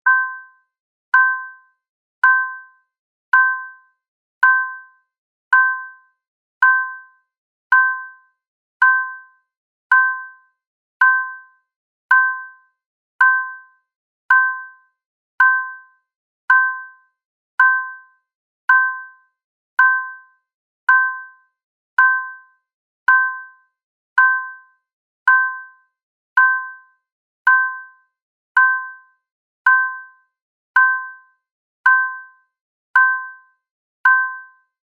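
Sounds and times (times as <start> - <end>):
two-tone ding: 0.1 - 0.6, 31.9 - 32.2, 33.0 - 33.4, 34.1 - 34.5.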